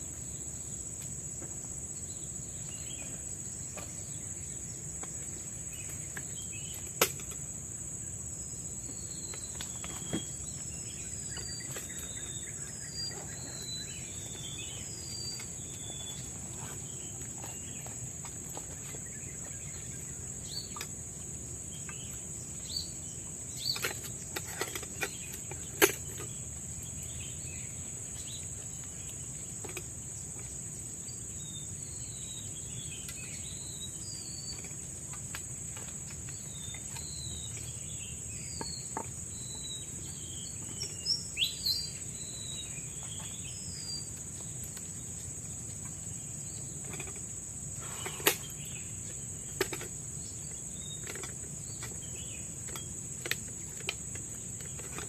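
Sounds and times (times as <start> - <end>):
bird chirps: 8.8 - 20.9.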